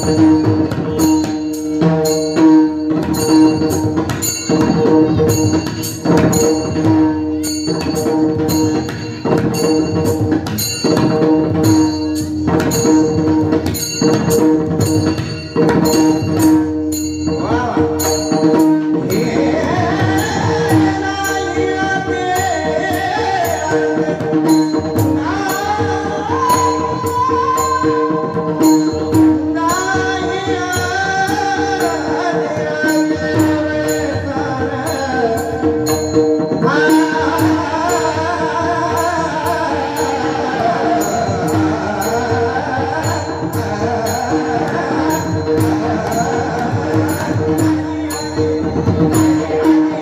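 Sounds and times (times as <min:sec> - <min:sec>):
drumming: 0:00.0 - 0:50.0
men singing devotional song: 0:17.4 - 0:28.6, 0:29.2 - 0:50.0.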